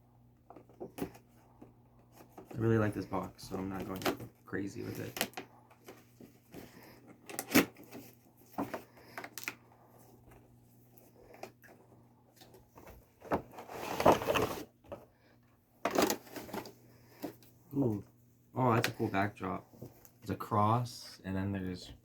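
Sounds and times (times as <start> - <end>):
box contents sliding out: 13.4 - 14.8.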